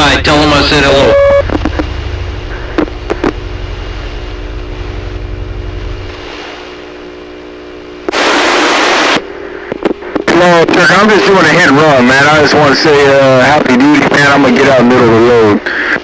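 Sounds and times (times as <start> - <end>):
radio beep: 0.0 - 5.0
low hum: 0.0 - 13.1
loud rush of radio hiss: 0.0 - 16.0
radio band static: 0.0 - 16.0
static crackles: 0.0 - 16.0.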